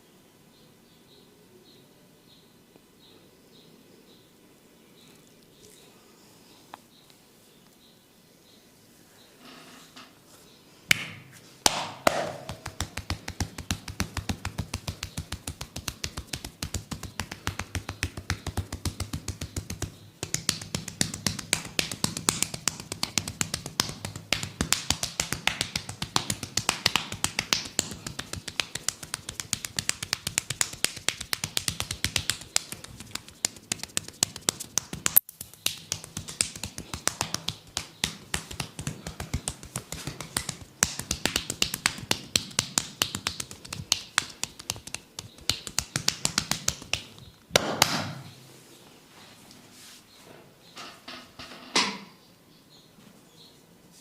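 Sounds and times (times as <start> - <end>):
fast rhythmic head tapping: 11.6 - 48.0.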